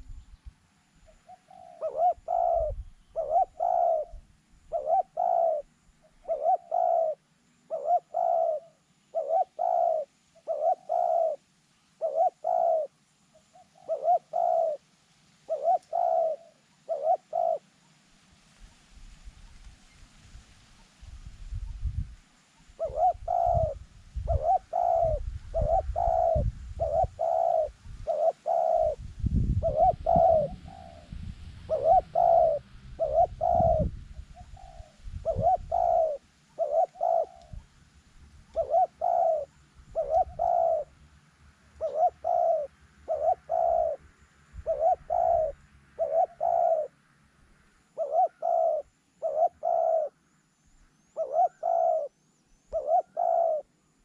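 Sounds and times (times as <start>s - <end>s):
dove cooing: 1.1s - 14.8s, 15.4s - 17.7s, 22.8s - 37.7s, 38.4s - 41.0s, 41.7s - 47.0s, 47.9s - 50.3s, 51.0s - 53.7s
low rumbling wind noise: 1.9s - 4.9s, 18.9s - 36.3s, 37.1s - 41.1s, 42.2s - 46.2s.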